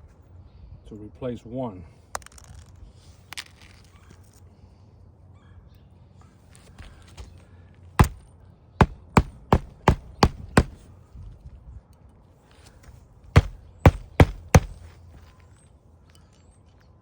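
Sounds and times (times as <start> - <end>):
hammer striking nails: 8.0 - 8.2, 8.8 - 10.8, 13.4 - 14.9.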